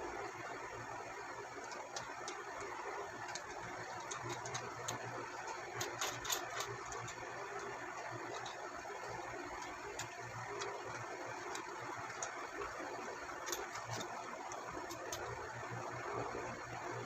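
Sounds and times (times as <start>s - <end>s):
plastic parts clicking: 1.6s - 12.6s, 13.4s - 15.4s.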